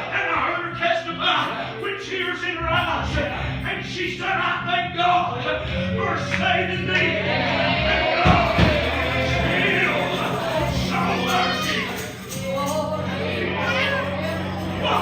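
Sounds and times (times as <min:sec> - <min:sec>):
group singing gospel: 0:05.2 - 0:15.0.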